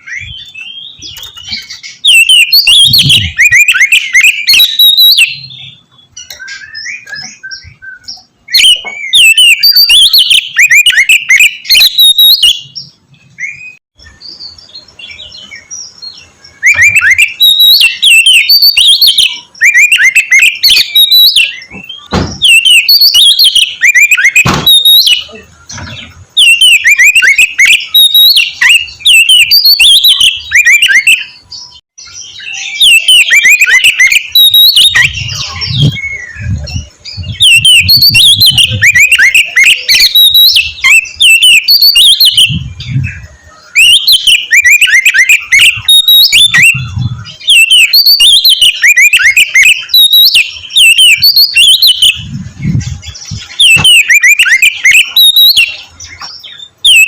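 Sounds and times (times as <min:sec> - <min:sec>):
bird singing whistled notes: 0:00.0 - 0:57.0
low thuds: 0:21.7 - 0:22.5.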